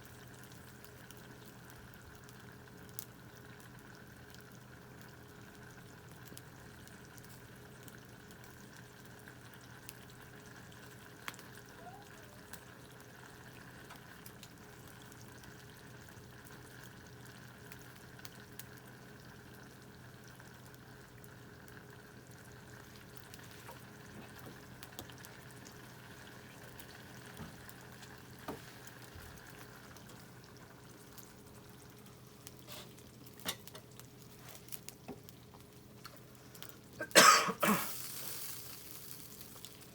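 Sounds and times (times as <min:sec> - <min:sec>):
campfire crackles and pops: 0:00.1 - 0:37.1, 0:37.8 - 0:39.9
food sizzling in a tin: 0:24.6 - 0:35.0, 0:37.7 - 0:39.9.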